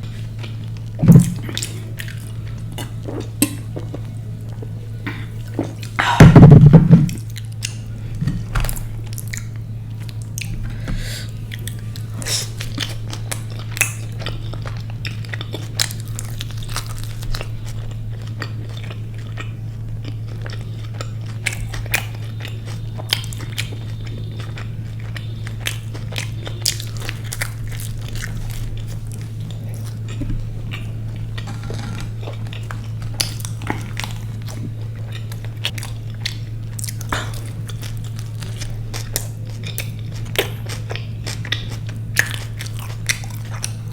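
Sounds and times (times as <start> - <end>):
chewing and biting food: 0.0 - 43.9
steady low hum: 0.0 - 43.9
loud heavy thump: 1.0 - 1.5, 6.1 - 7.2.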